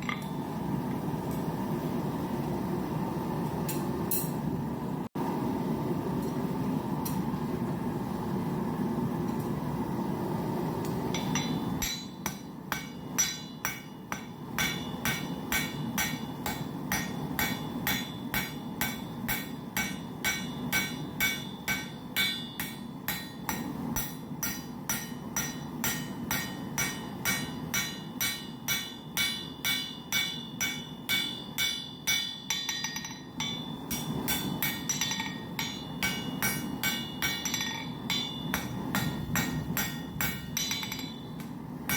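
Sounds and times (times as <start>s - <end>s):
hammer striking steel on anvil: 11.1s - 41.9s.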